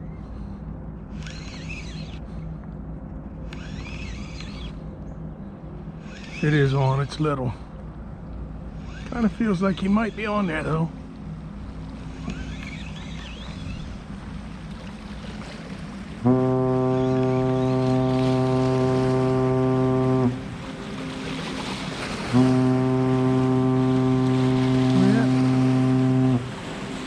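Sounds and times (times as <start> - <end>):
ship's foghorn blasts: 16.1 - 27.0.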